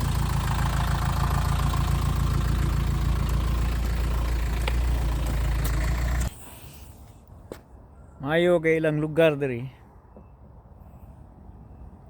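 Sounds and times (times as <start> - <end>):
car engine idling: 0.0 - 6.3.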